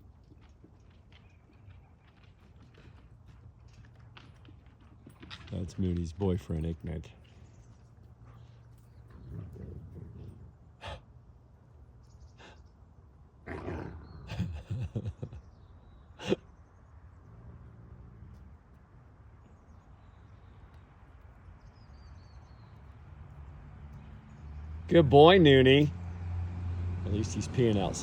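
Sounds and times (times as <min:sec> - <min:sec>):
wolves growling and snarling: 0:08.2 - 0:11.2, 0:13.4 - 0:15.3, 0:17.1 - 0:19.6.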